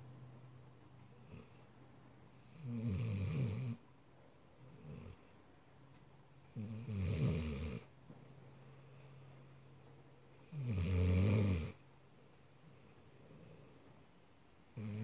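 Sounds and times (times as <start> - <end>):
dog snoring: 1.0 - 1.8, 2.4 - 9.2, 10.4 - 11.8, 12.6 - 14.2, 14.8 - 15.0.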